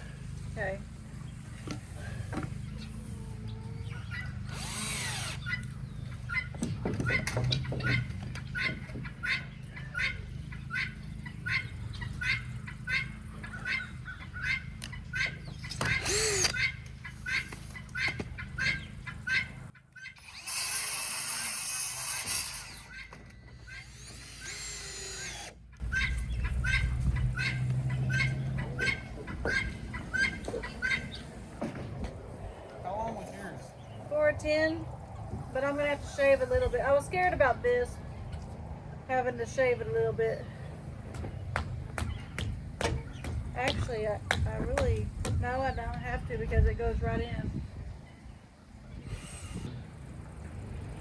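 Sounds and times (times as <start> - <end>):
power drill driving screw: 4.5 - 5.5, 15.8 - 16.6, 20.2 - 25.6.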